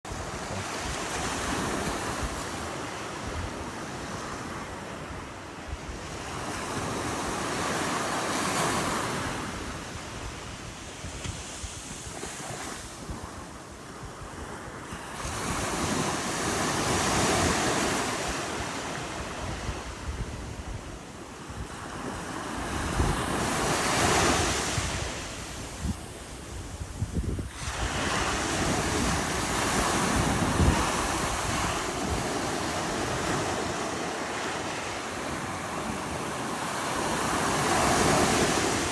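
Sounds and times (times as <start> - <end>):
sea waves breaking on beach: 0.1 - 38.9
wind buffeting microphone: 0.1 - 38.9.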